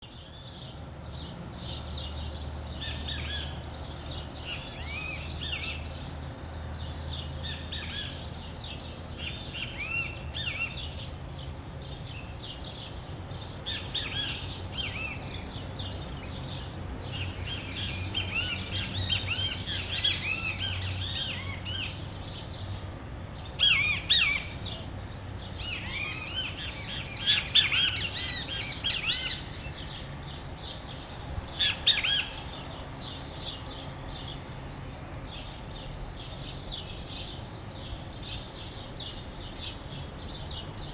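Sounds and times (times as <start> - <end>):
birds chirping in chorus: 0.0 - 40.9.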